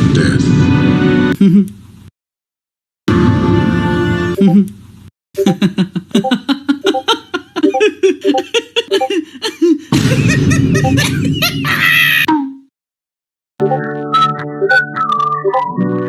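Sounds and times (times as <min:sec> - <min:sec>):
person laughing hard: 0:05.4 - 0:12.3.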